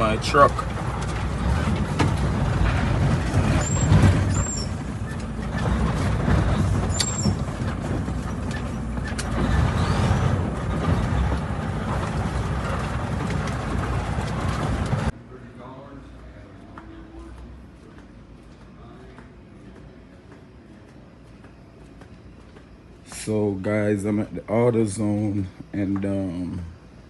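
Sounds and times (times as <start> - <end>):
vehicle engine and road rumble: 0.0 - 15.3.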